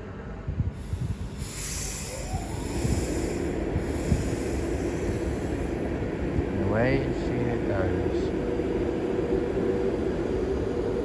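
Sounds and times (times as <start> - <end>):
train low rumble: 0.0 - 11.0
hiss: 0.7 - 5.8
electric train motors whining: 0.8 - 11.0.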